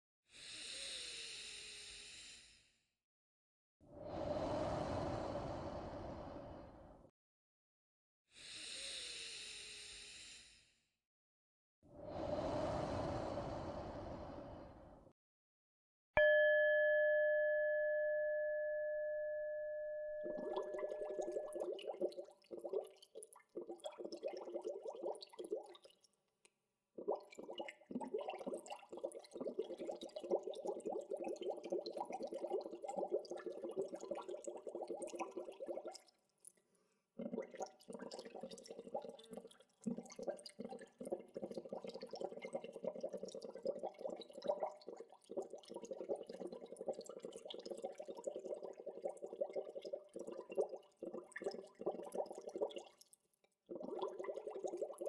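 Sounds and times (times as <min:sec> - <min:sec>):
bell ringing: 0:16.2 - 0:21.5
water bubbling: 0:20.2 - 0:26.0, 0:27.0 - 0:36.0, 0:37.2 - 0:53.0, 0:53.7 - 0:55.0.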